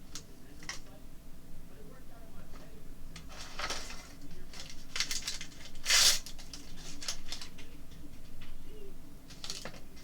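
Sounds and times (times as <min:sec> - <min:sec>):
packaging rustling and crinkling: 0:03.3 - 0:07.6.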